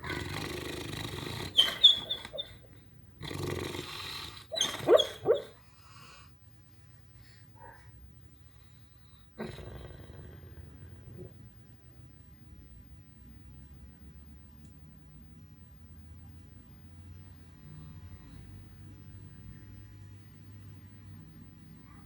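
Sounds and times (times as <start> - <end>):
dog snorting: 0.0 - 5.6, 9.4 - 11.4
dog snoring: 0.0 - 6.1, 8.5 - 11.7.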